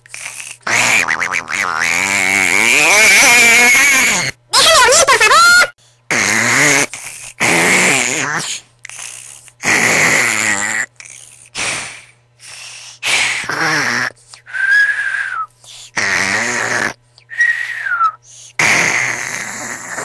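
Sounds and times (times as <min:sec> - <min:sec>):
loud snoring: 0:00.1 - 0:04.3, 0:06.1 - 0:12.1, 0:13.1 - 0:14.2, 0:15.9 - 0:17.0, 0:18.6 - 0:20.0.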